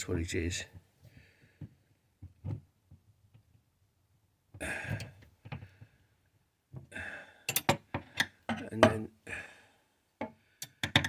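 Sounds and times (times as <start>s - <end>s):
man exhaling breathily: 4.6s - 5.1s, 6.9s - 7.5s, 9.2s - 9.8s.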